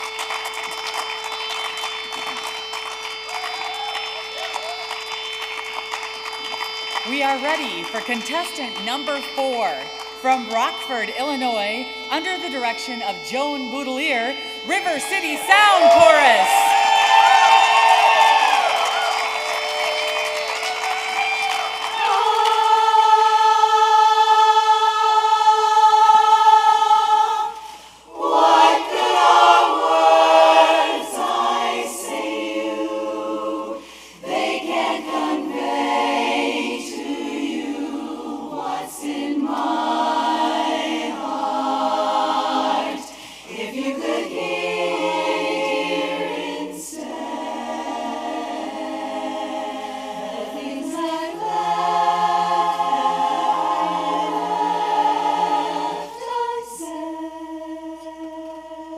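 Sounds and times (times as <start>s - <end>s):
women's chorus singing a cappella: 21.7s - 58.9s.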